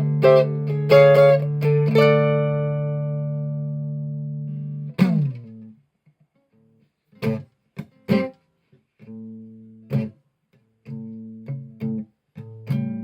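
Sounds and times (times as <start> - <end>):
plucked string instrument: 0.0 - 5.7.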